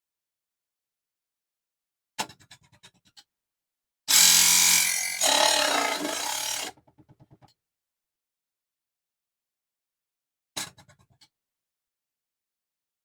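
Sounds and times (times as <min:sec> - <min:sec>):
table saw cutting aluminum: 0:04.1 - 0:06.7.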